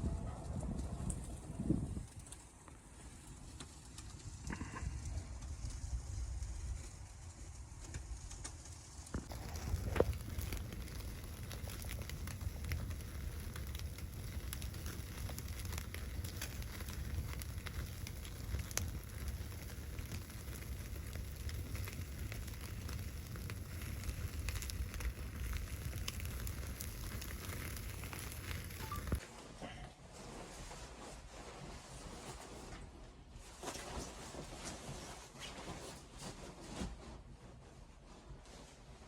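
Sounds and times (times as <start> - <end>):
wood fire crackling and popping: 1.1 - 29.2.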